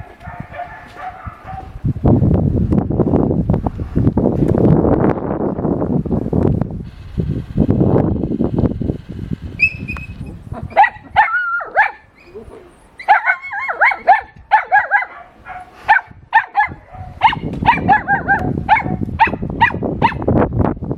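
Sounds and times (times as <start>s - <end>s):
low rumbling noise: 1.4s - 13.0s
dog yipping and whining: 9.6s - 20.3s.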